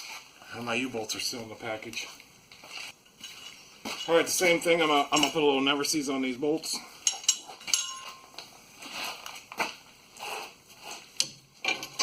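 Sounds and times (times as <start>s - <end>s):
brush scraping strokes: 10.1s - 11.2s.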